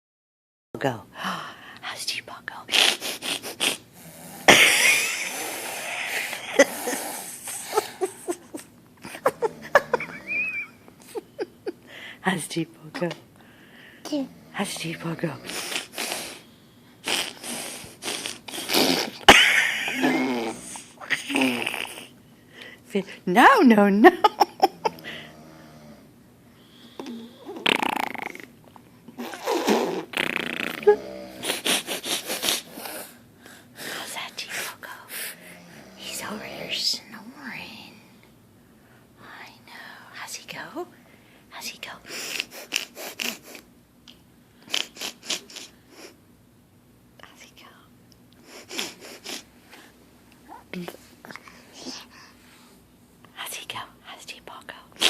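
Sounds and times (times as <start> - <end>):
person snoring: 3.2 - 8.1, 19.9 - 22.1, 24.8 - 26.1, 27.0 - 28.5, 29.2 - 33.1, 35.3 - 36.7
mock snore: 20.0 - 22.0, 24.9 - 26.1, 29.5 - 31.9.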